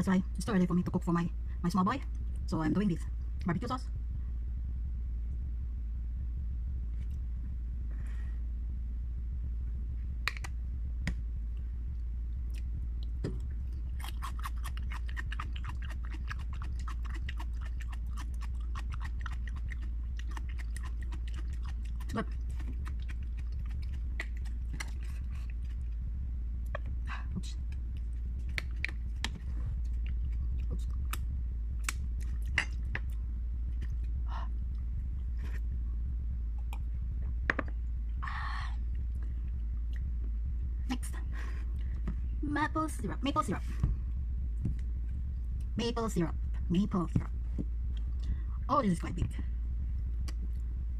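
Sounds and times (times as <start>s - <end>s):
steady low hum: 0.0s - 50.9s
crunchy chewing of raw onion: 13.7s - 26.0s.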